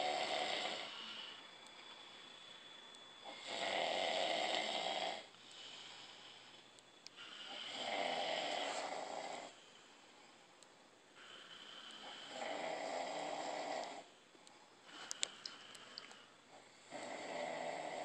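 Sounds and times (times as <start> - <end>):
people snoring loudly: 0.0 - 1.4, 3.2 - 6.2, 7.2 - 9.6, 11.2 - 14.1, 16.5 - 18.0
quiet breathing: 0.0 - 18.0.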